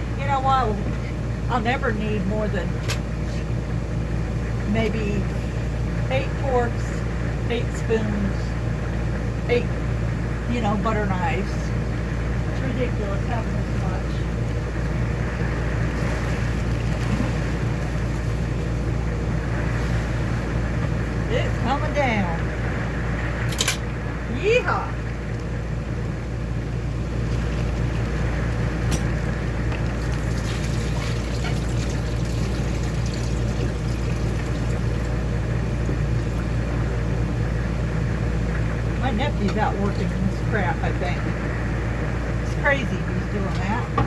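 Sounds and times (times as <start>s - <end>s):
low rumble: 0.0s - 44.0s
water rushing: 27.1s - 37.0s.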